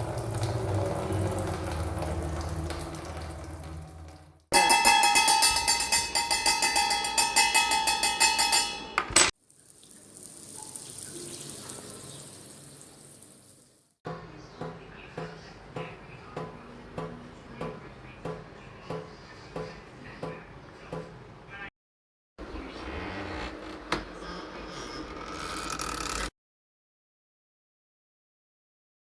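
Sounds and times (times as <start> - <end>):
water running from a tap: 0.0 - 4.5, 9.4 - 14.0.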